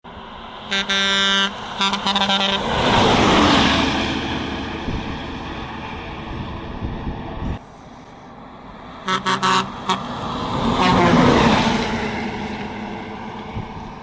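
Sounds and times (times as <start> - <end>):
vehicle engine and tyre noise: 0.0 - 14.0
bus horn blasts and toots: 0.6 - 3.0, 9.0 - 11.5.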